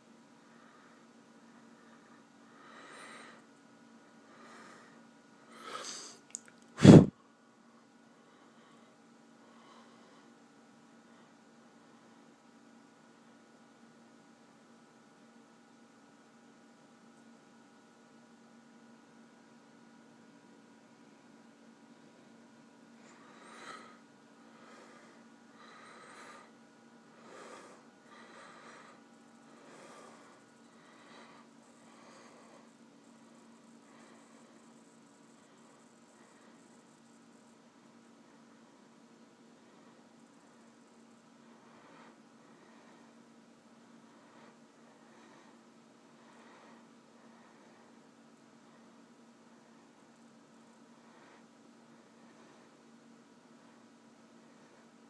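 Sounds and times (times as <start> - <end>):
low steady hum: 0.0 - 55.0
person breathing: 0.4 - 6.2, 6.8 - 7.2, 8.1 - 10.4, 22.0 - 50.0, 50.7 - 55.0
person sneezing: 6.8 - 7.1.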